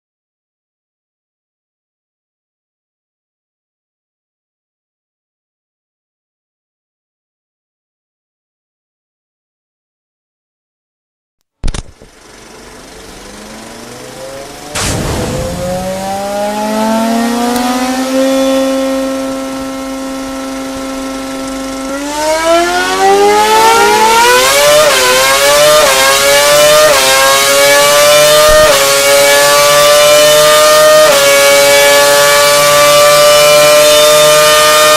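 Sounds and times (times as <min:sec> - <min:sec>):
racing engine starting and revving: 0:12.0 - 0:34.9.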